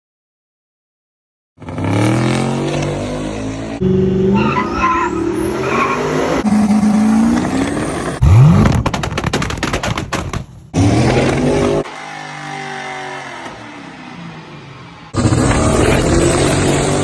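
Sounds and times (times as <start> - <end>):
car engines revving hard: 1.6 - 8.8, 10.7 - 17.0.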